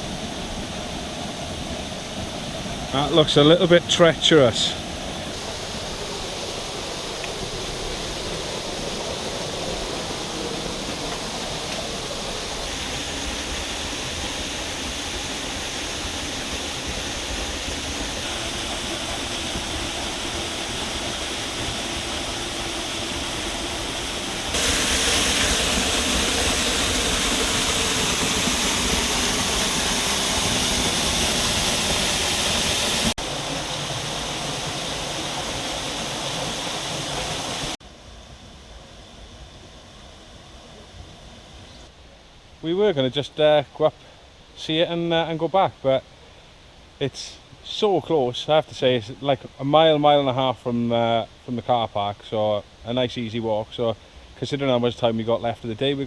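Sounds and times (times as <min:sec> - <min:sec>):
waterfall rushing: 0:00.0 - 0:37.8.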